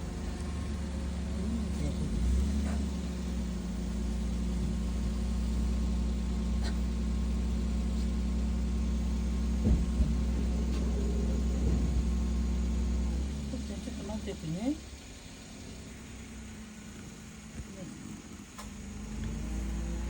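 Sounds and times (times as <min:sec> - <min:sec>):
car engine idling: 0:00.0 - 0:20.0
short knocks: 0:09.6 - 0:12.2.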